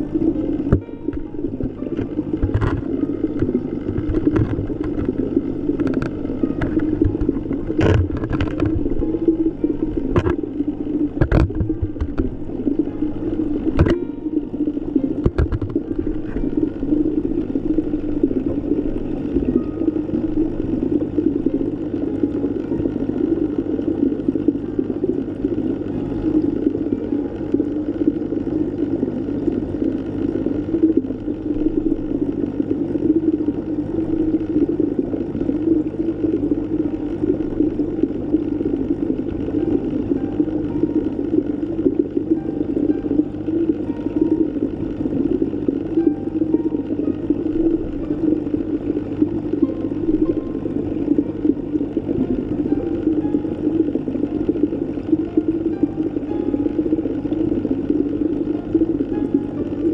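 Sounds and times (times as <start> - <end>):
underwater rush of water: 0.0 - 59.9.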